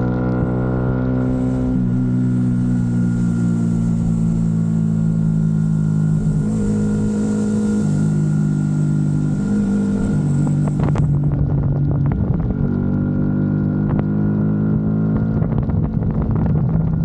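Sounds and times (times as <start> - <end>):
motorcycle engine running: 0.0 - 17.0
wind buffeting microphone: 10.2 - 13.1, 15.2 - 17.0.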